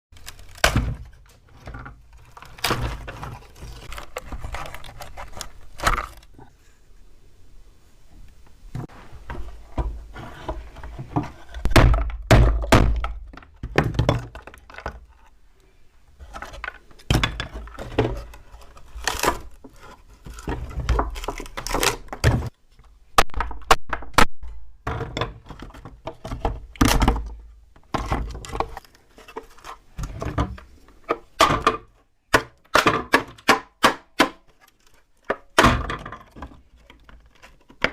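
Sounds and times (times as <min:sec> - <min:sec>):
wooden knocks and thunks: 0:08.7 - 0:15.0, 0:23.2 - 0:28.7, 0:35.6 - 0:37.2.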